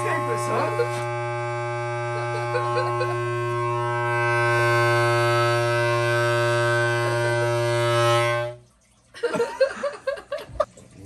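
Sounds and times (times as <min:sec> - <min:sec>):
homemade air horn drone: 0:00.0 - 0:08.7.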